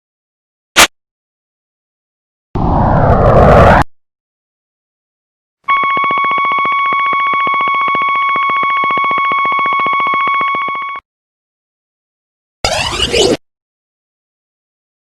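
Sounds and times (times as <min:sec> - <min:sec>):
high pulsing electronic beep: 0:05.7 - 0:11.0.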